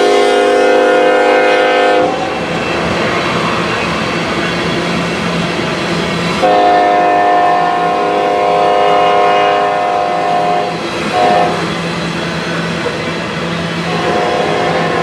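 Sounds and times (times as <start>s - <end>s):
locomotive horn blasts: 0.0s - 2.2s, 6.4s - 11.7s, 13.8s - 15.0s
passing train rumble: 0.0s - 15.0s.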